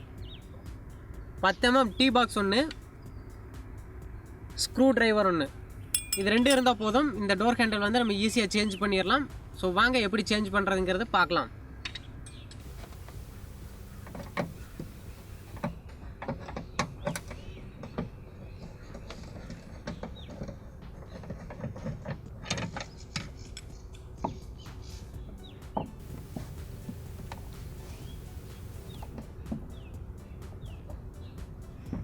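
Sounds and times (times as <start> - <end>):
bird calls: 12.0 - 20.5, 22.9 - 30.0.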